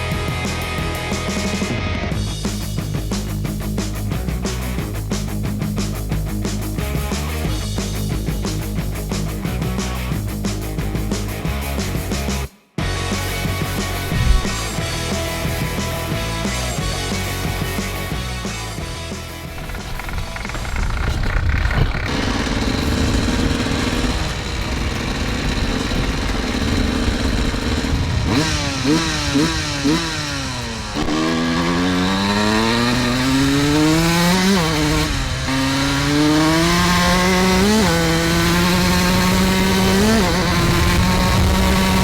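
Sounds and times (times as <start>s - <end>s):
dirt bike engine revving: 13.6s - 15.2s, 19.3s - 42.0s.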